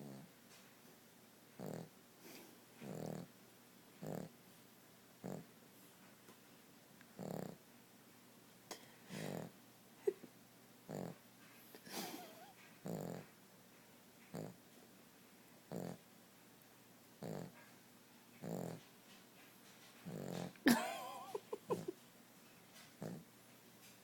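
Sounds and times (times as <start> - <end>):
dog snoring: 0.0 - 0.3, 1.6 - 3.3, 4.0 - 4.4, 5.2 - 5.5, 7.2 - 7.6, 9.1 - 9.6, 10.9 - 11.2, 12.2 - 13.4, 14.2 - 14.6, 15.7 - 16.0, 17.2 - 17.7, 18.4 - 18.9, 20.0 - 20.8, 23.0 - 23.3.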